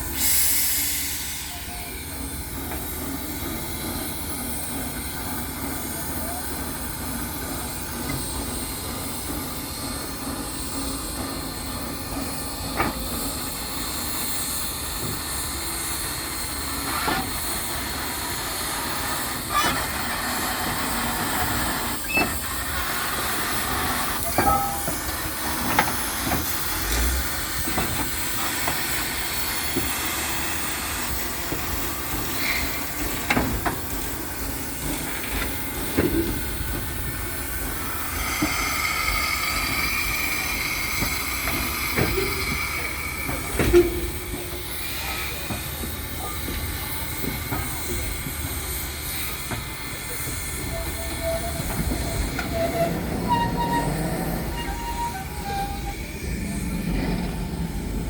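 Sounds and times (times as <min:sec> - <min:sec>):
wheels squealing on rail: 0:00.0 - 0:02.4, 0:15.1 - 0:34.0, 0:34.8 - 0:58.0
steam hissing: 0:00.0 - 0:58.0
metal clanks and knocks: 0:24.3 - 0:26.5.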